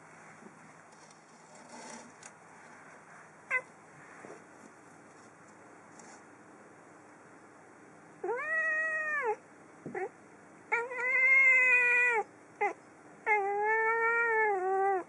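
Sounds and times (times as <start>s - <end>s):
cat meowing: 8.2s - 9.4s, 10.7s - 15.0s.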